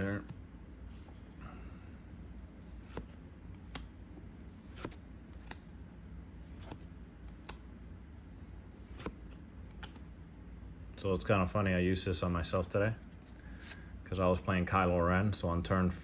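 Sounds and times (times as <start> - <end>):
trading cards clicking and snapping: 2.8 - 3.9, 4.6 - 5.6, 6.5 - 7.6, 8.9 - 10.1.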